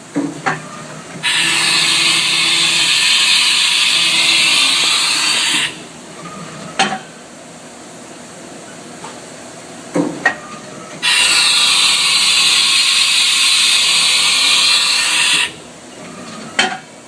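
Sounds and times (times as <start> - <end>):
compressed air blast: 1.2 - 5.8, 11.0 - 15.6.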